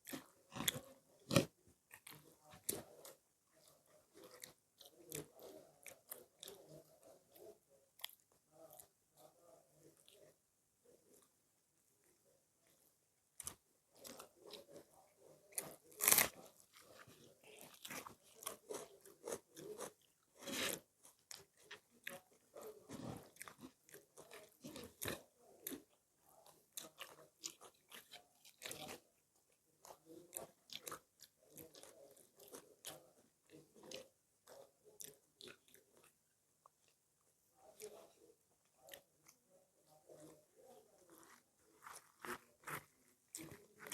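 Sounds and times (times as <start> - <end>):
crunching and chewing food: 0.0 - 43.9.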